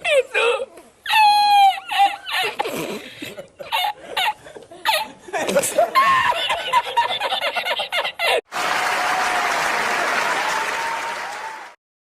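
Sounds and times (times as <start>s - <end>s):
crowd applause: 8.5s - 11.8s.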